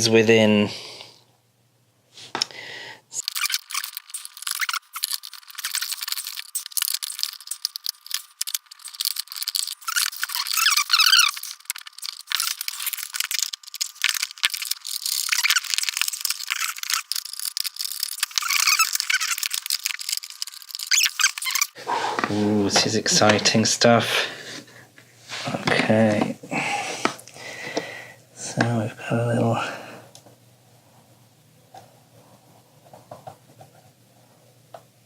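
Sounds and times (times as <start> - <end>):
plastic squeaking: 3.2 - 21.8.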